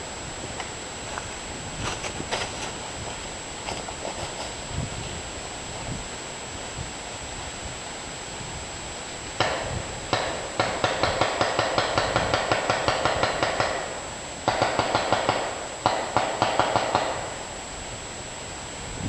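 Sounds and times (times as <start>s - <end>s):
airsoft gun shots: 9.4s - 17.5s.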